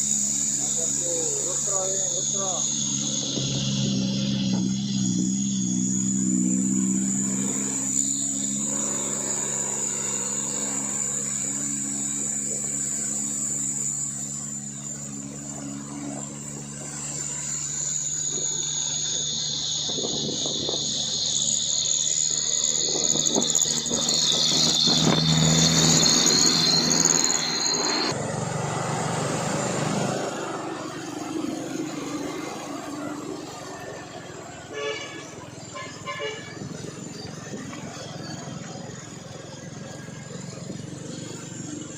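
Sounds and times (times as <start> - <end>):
truck engine labouring: 0.0 - 41.9.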